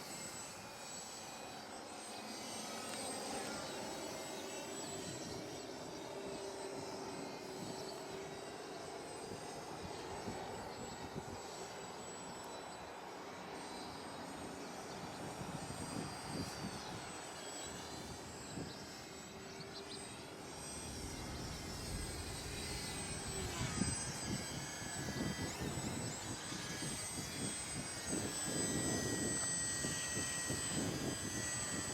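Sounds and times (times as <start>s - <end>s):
model plane motor whining: 0.0s - 31.9s
wind rumbling on microphone: 20.8s - 31.9s.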